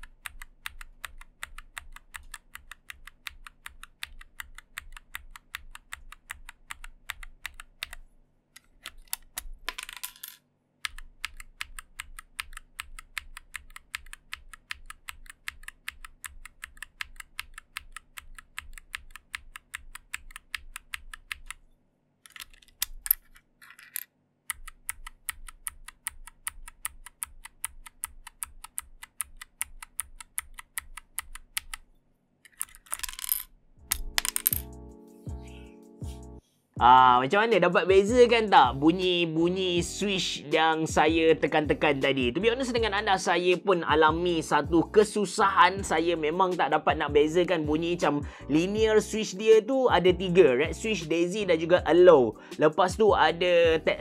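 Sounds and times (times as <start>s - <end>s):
keyboard key switches clicking: 0.0s - 8.0s, 10.8s - 21.6s, 24.5s - 31.8s.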